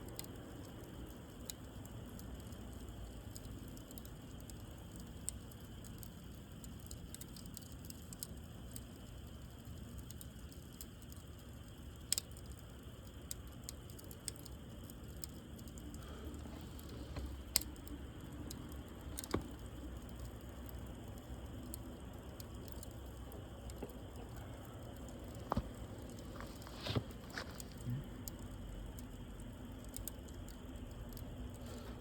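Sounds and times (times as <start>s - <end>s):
wood fire crackling: 0.0s - 32.0s
low steady rumble: 14.3s - 32.0s.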